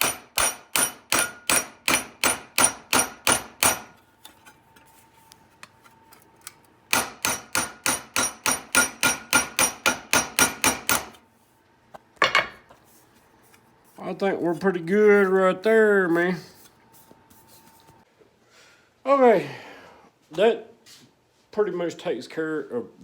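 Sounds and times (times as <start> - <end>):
hammer beating metal: 0.0 - 3.9, 6.9 - 11.2.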